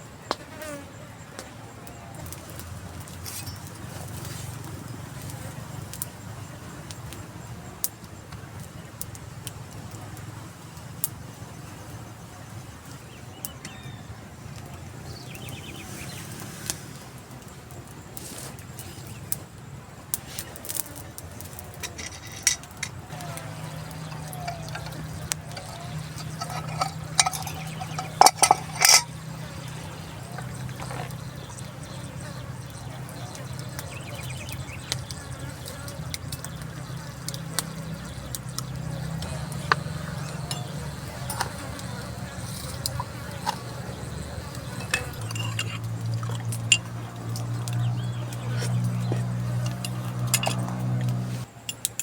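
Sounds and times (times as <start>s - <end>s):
loud metal clinks: 21.8s - 29.4s, 44.7s - 45.8s, 49.6s - 50.7s.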